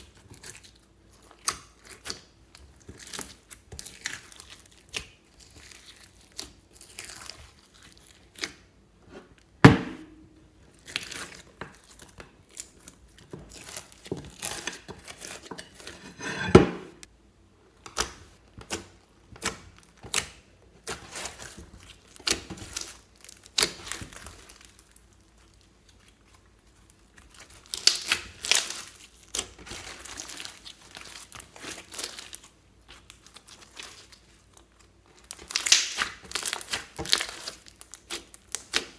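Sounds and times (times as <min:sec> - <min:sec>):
slime crackling and popping: 0:27.1 - 0:34.2, 0:35.2 - 0:38.9.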